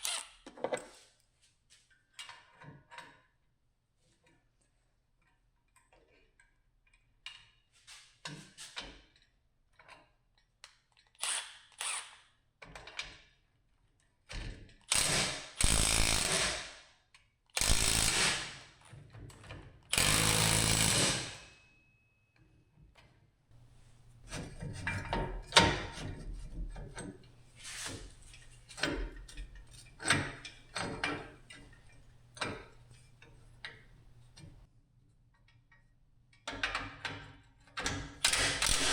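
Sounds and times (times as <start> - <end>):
power tool running: 14.9 - 16.7, 17.6 - 18.5, 19.9 - 21.4
metal knocks and clicks: 23.6 - 34.7
metal clanking and ratcheting: 24.3 - 34.5.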